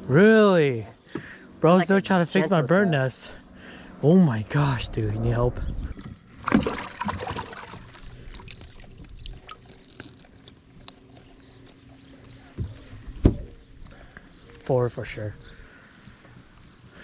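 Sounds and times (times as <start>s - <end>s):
faint steady hum: 1.1s - 9.8s.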